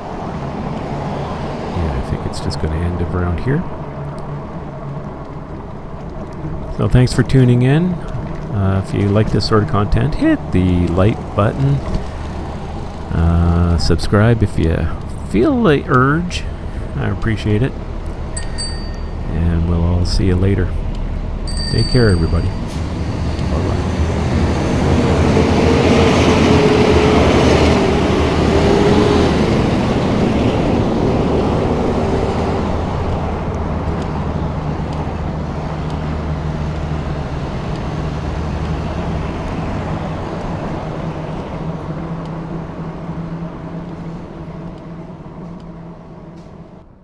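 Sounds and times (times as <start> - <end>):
road traffic engine drone: 0.0 - 47.0.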